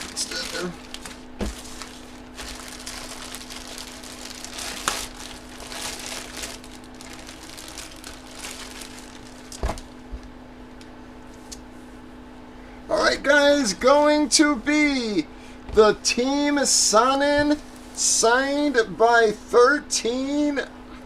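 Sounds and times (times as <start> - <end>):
bag crinkling and rustling: 0.0 - 10.0
faint steady hum: 0.0 - 21.0.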